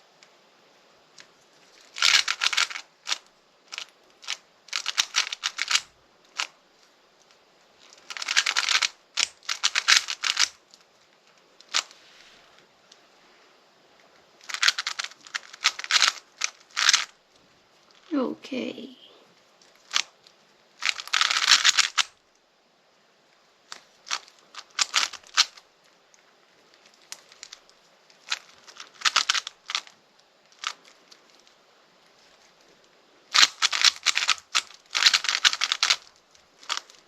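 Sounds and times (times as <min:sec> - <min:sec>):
speedcube plastic clicking: 0:01.2 - 0:12.0, 0:14.4 - 0:17.2, 0:19.6 - 0:22.4, 0:23.7 - 0:25.7, 0:26.8 - 0:31.5, 0:33.3 - 0:37.0.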